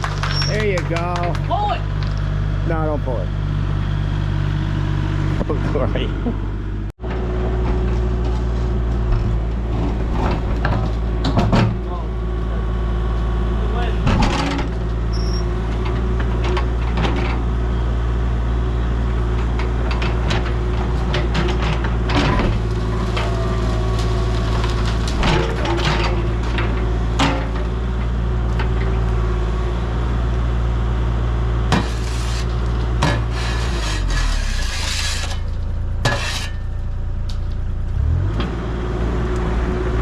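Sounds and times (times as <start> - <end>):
diesel engine running: 0.0 - 40.0
metal clanks and scrapes: 19.4 - 27.7, 31.7 - 37.6.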